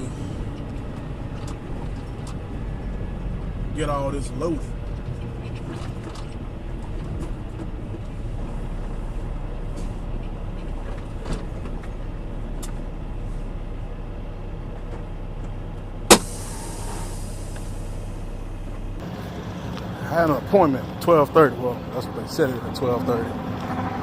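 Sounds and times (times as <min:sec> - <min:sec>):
diesel truck engine running: 0:00.0 - 0:24.0
sharp loud pop: 0:16.1 - 0:17.3
short hiss: 0:16.1 - 0:18.0.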